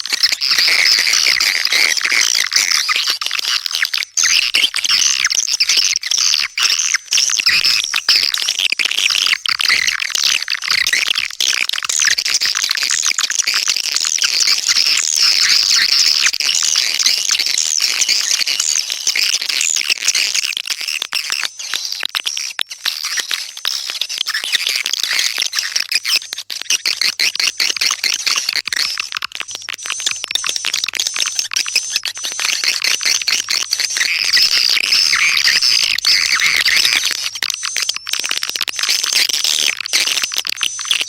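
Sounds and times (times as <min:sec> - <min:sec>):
swiftlets twittering: 0:25.6 - 0:41.0.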